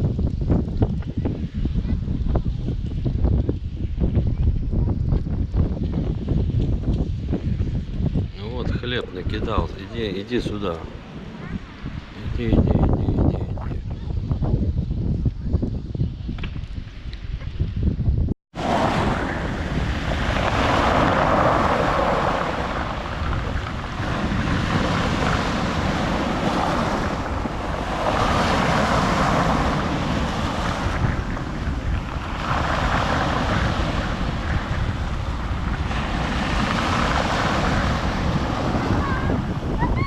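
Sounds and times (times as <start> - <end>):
wind buffeting microphone: 0.0 - 40.0
sea waves breaking on shore: 18.5 - 40.0.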